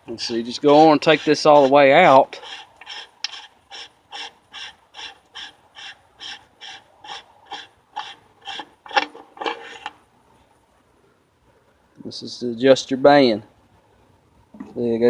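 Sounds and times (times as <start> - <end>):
screw rasping as it is backed out: 0.1 - 10.0.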